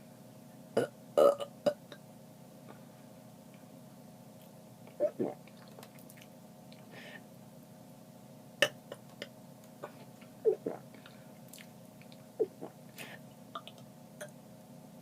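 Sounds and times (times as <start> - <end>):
faint steady hum: 0.0 - 15.0
throaty gulps: 5.0 - 6.2, 10.5 - 11.6, 12.4 - 12.8.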